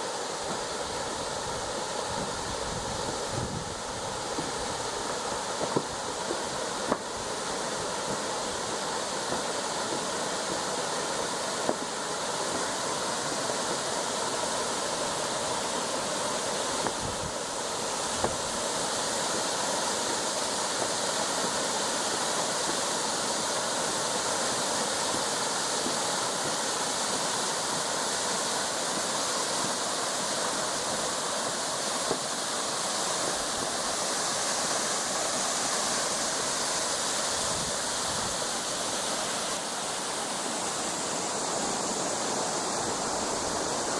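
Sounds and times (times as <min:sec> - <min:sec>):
stream water rushing: 0:00.0 - 0:43.9.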